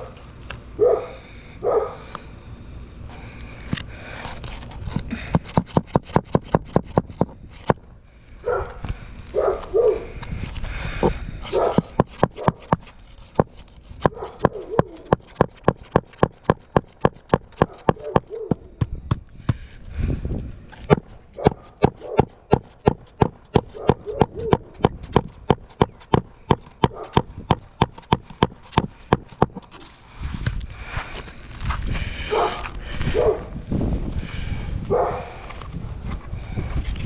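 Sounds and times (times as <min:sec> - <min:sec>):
dog barking: 0:00.8 - 0:02.0, 0:08.4 - 0:10.1, 0:11.5 - 0:12.6, 0:23.7 - 0:24.6, 0:32.3 - 0:33.5, 0:34.9 - 0:35.3
hammer driving nails: 0:05.2 - 0:07.8, 0:11.0 - 0:19.6, 0:20.9 - 0:29.8.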